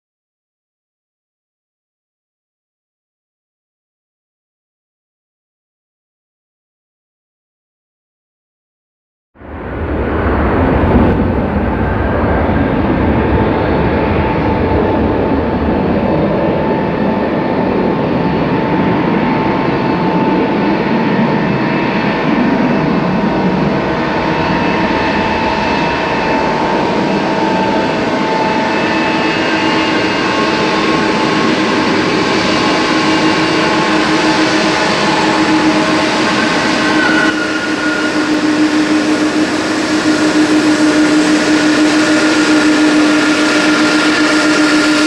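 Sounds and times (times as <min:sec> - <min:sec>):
jet engine cabin rumble: 0:09.4 - 0:45.0
whining engine tones: 0:09.5 - 0:45.0.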